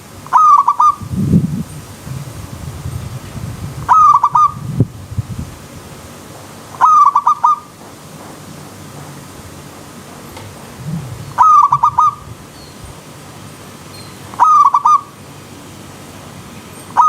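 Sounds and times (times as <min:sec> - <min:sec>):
dove cooing: 0:00.3 - 0:01.0, 0:03.9 - 0:04.6, 0:06.8 - 0:07.6, 0:10.8 - 0:12.3, 0:14.4 - 0:15.1.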